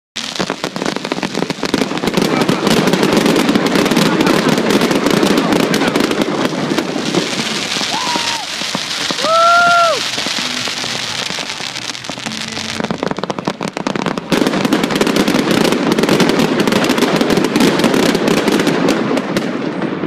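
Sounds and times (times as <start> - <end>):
firework crackling: 0.2 - 20.0
firework whistle: 5.4 - 15.4.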